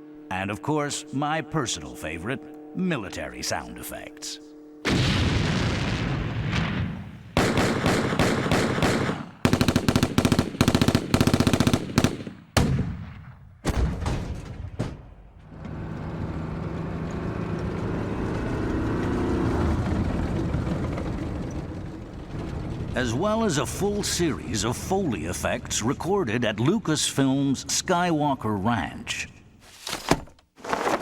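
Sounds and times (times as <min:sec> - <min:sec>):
heavy explosion blasts: 0:04.9 - 0:09.8
single gunshots: 0:04.9 - 0:15.0
rapid machine-gun fire: 0:07.4 - 0:12.9.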